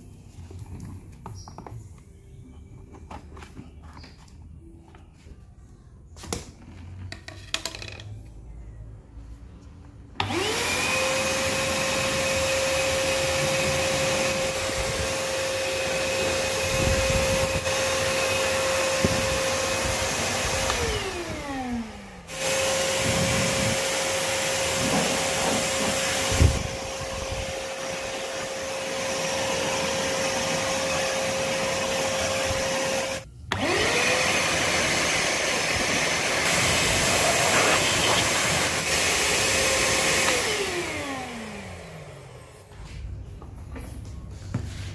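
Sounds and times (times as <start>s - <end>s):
vacuum cleaner whining: 10.2s - 43.0s.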